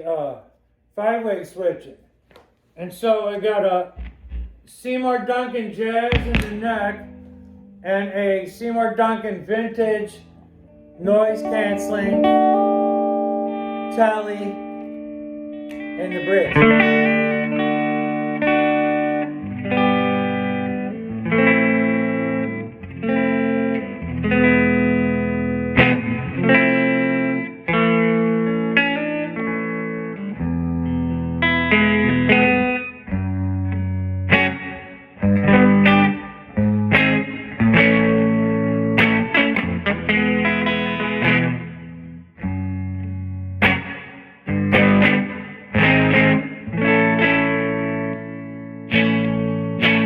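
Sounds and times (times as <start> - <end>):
electric guitar chords: 4.0 - 4.6, 6.1 - 8.4, 9.9 - 50.0
picked guitar notes: 4.0 - 4.7, 6.0 - 8.5, 9.2 - 50.0.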